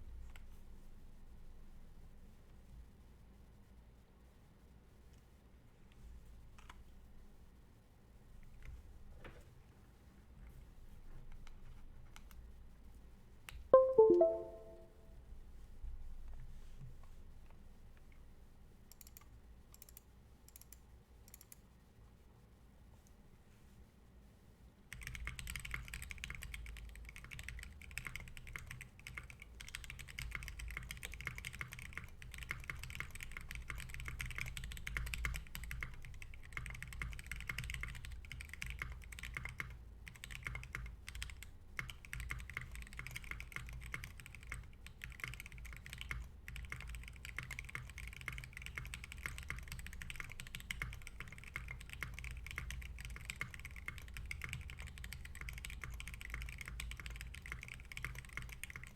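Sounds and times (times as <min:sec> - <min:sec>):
mechanical keyboard typing: 0:13.8 - 0:14.8, 0:24.9 - 0:58.9.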